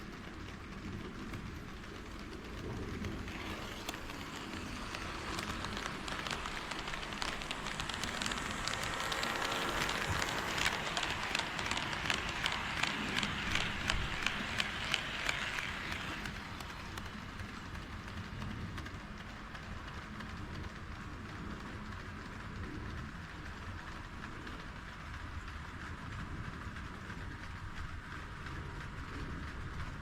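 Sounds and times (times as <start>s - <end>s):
model train rumble: 0.0s - 30.0s
rail joint clicks: 1.3s - 22.0s.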